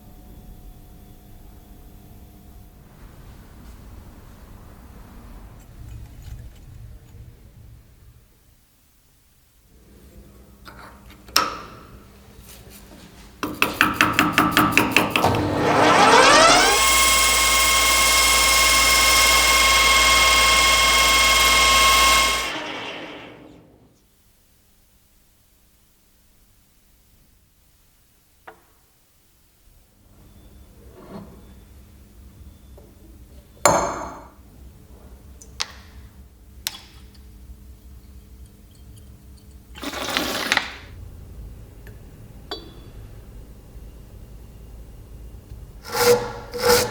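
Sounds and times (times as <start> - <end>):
electric motor whining: 15.1 - 23.8.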